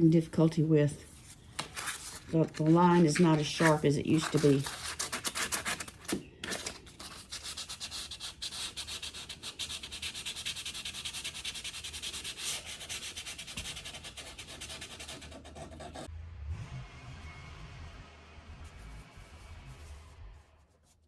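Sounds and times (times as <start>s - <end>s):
sandpaper rubbing on wood: 6.6s - 16.1s.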